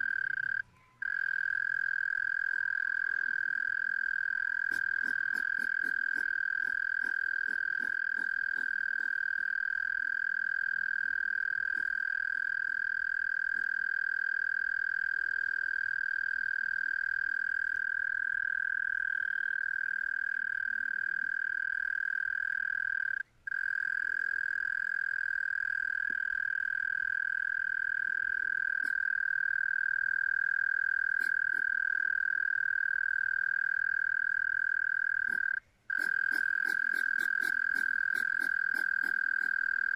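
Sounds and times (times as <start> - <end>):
continuous high-pitched animal call: 0.0 - 39.9.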